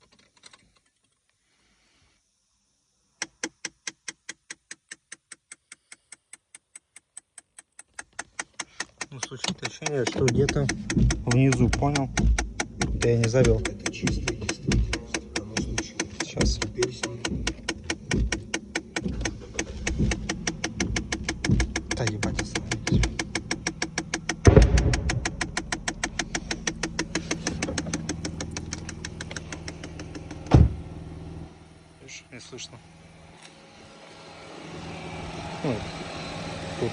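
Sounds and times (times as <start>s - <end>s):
rapid clicking in car dashboard: 3.3s - 30.6s
rapid ticking engine knock: 7.6s - 30.4s.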